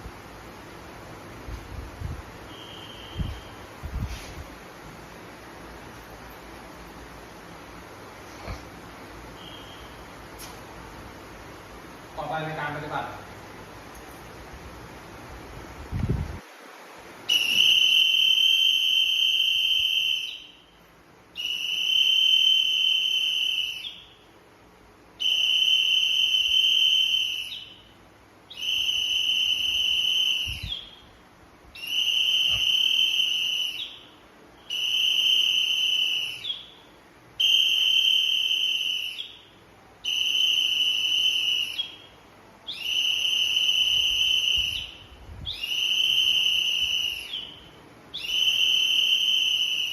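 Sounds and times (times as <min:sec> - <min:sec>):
whistle long blasts: 0:02.0 - 0:04.4, 0:09.3 - 0:10.1, 0:17.2 - 0:24.4, 0:25.1 - 0:49.9.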